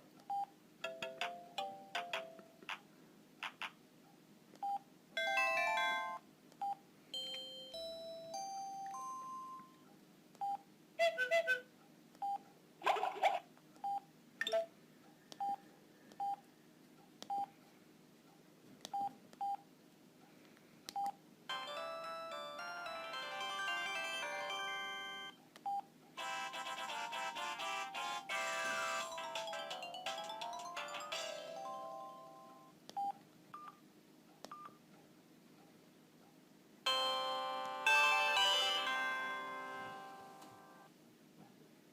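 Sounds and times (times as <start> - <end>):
ringtone melody: 0.8 - 2.6, 5.2 - 6.2, 7.2 - 9.8, 21.5 - 25.4, 26.2 - 32.7, 36.9 - 40.9
mobile phone keypad beeps: 33.0 - 33.8, 34.5 - 34.8
phone key beeps: 34.5 - 34.8.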